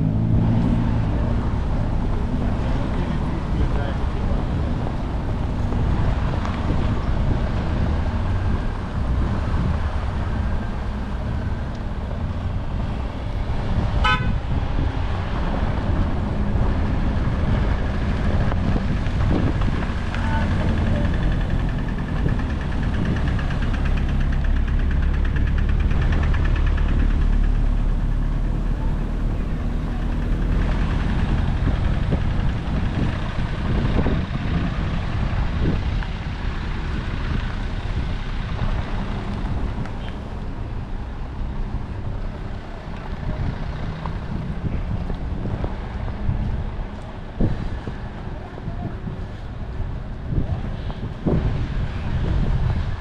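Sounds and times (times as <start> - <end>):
road traffic passing: 0.0 - 53.0
car horn toot: 14.0 - 14.5.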